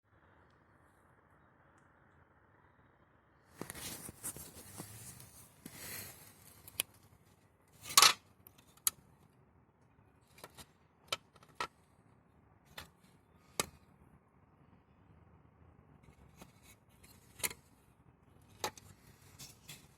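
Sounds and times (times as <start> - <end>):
rustling: 3.6 - 6.9.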